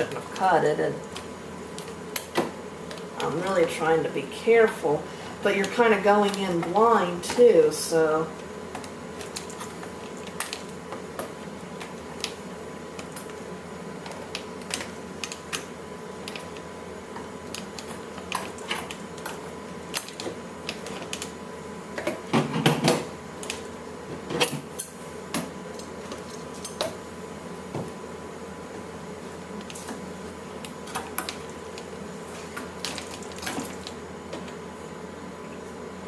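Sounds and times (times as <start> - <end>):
faint steady hum: 0.0 - 36.0.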